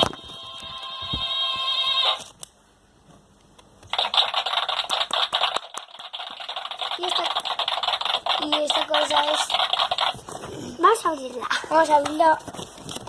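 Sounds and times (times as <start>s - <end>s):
electronic crackling rattling effect: 3.8s - 10.4s.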